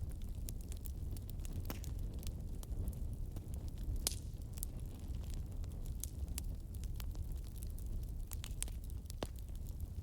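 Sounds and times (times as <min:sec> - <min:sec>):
logs popping and crackling: 0:00.0 - 0:10.0
wood fire flames rumbling: 0:00.0 - 0:10.0.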